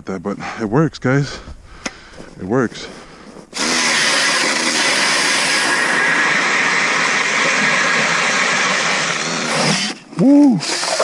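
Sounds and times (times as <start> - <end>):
ice auger drilling through ice: 3.5 - 11.0.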